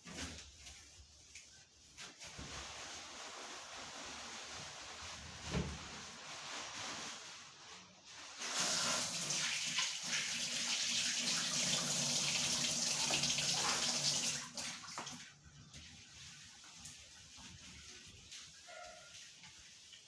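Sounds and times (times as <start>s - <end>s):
water splashing into sink: 8.4s - 15.8s.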